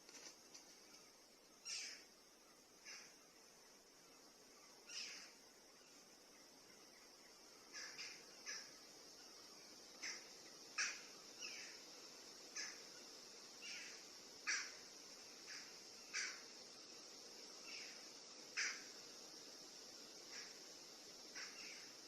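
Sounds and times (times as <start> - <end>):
high-pitched insect drone: 0.9 - 22.0
short bird calls: 15.5 - 16.5.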